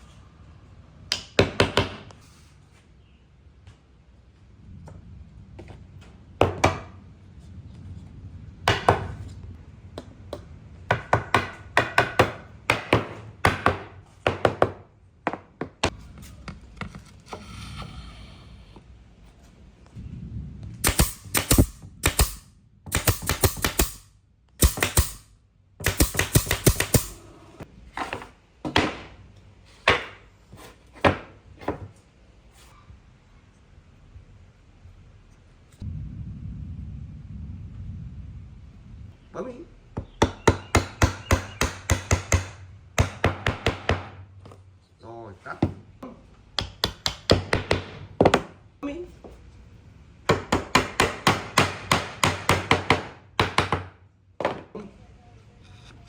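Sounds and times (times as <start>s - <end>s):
low rumble: 4.1s - 10.9s, 15.9s - 24.5s, 34.0s - 40.2s.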